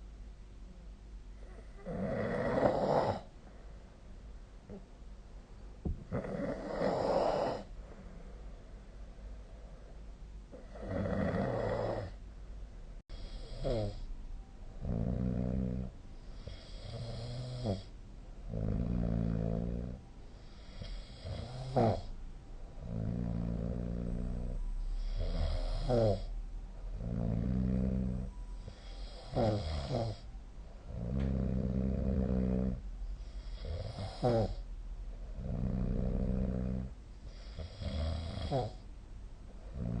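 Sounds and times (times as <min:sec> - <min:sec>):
person snoring: 0:01.4 - 0:03.3, 0:06.1 - 0:07.7, 0:10.5 - 0:12.2, 0:13.1 - 0:14.1, 0:14.8 - 0:17.9, 0:18.5 - 0:22.1, 0:22.8 - 0:26.3, 0:27.0 - 0:30.2, 0:30.9 - 0:34.6, 0:35.4 - 0:38.8, 0:39.7 - 0:40.0.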